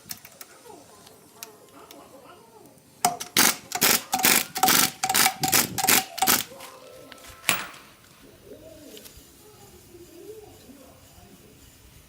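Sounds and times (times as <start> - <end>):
hammer striking metal: 7.5 - 8.0.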